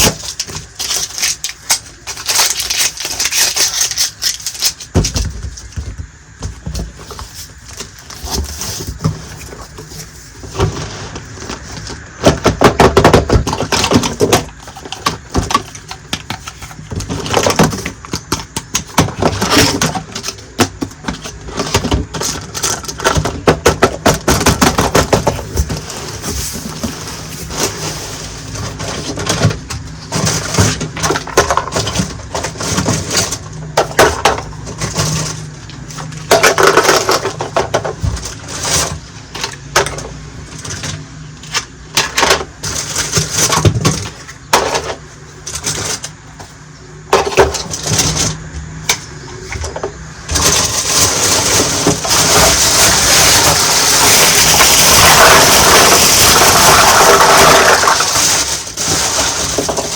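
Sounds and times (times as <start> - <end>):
plastic toy pieces clicking and rattling: 0.0 - 5.2, 50.3 - 59.9
steady rustling hiss: 0.0 - 12.3.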